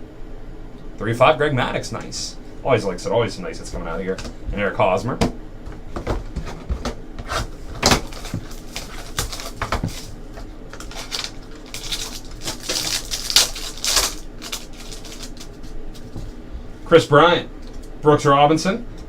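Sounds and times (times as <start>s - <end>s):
cards sliding and rustling: 7.2s - 10.2s, 10.8s - 16.3s.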